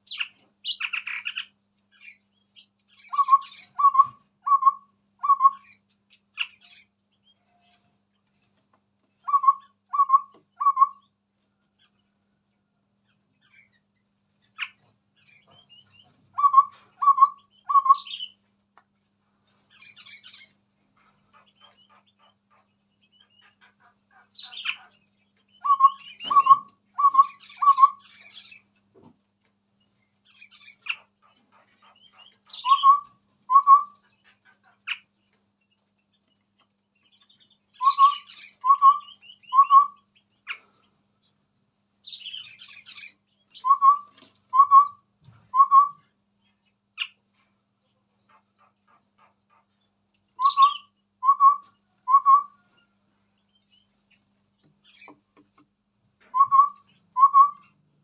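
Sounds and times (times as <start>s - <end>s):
bird chirps: 0.0s - 58.0s
bird whistled notes: 3.1s - 5.7s, 9.2s - 11.0s, 16.4s - 18.3s, 25.6s - 28.1s, 32.6s - 34.0s, 37.8s - 40.0s, 43.6s - 46.0s, 50.4s - 52.6s, 56.3s - 57.7s.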